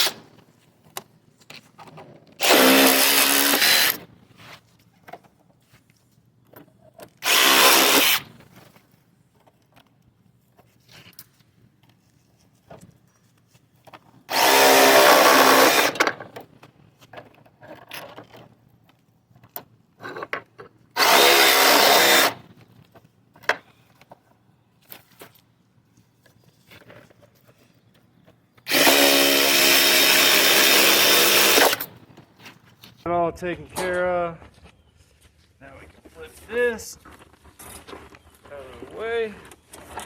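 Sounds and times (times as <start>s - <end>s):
power drill running: 0.0s - 0.2s, 2.4s - 4.0s, 7.2s - 8.3s, 14.3s - 16.2s, 21.0s - 22.4s, 28.7s - 32.0s.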